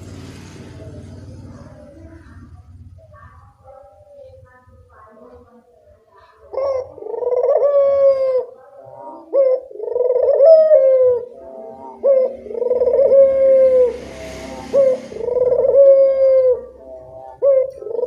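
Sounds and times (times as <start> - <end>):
dove cooing: 0.8 - 18.0.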